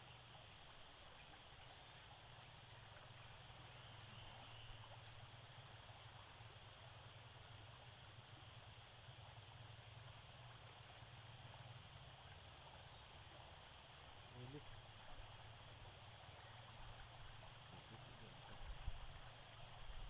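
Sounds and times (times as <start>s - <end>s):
insects droning: 0.0s - 20.0s
faint low hum: 14.2s - 20.0s.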